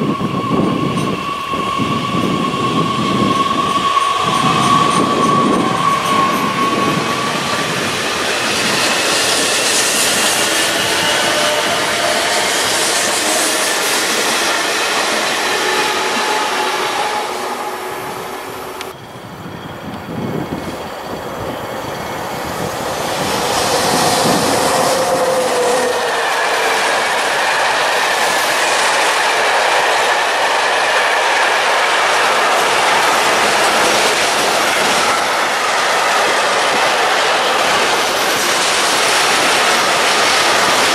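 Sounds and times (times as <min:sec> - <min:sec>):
wheels squealing: 0:00.1 - 0:40.9
freight train wagons rolling: 0:00.5 - 0:40.9.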